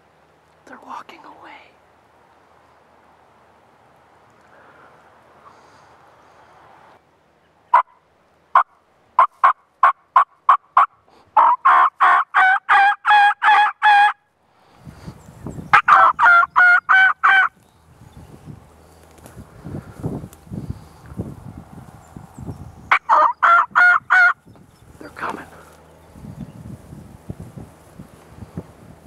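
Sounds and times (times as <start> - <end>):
turkey yelping and clucking: 7.7 - 14.2, 15.7 - 17.5, 22.9 - 24.4
rustling: 18.6 - 21.0.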